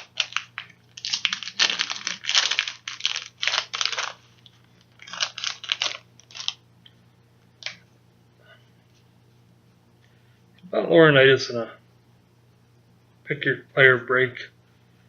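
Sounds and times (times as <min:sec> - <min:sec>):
packaging crinkling: 0:00.0 - 0:06.6, 0:07.6 - 0:07.8.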